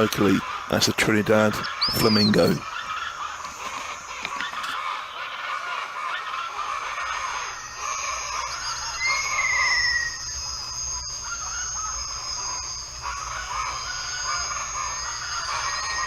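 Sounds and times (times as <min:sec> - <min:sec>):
high-pitched insect drone: 0:00.0 - 0:16.0
wetland birds calling: 0:00.0 - 0:16.0
falling whistled bird call: 0:01.4 - 0:16.0.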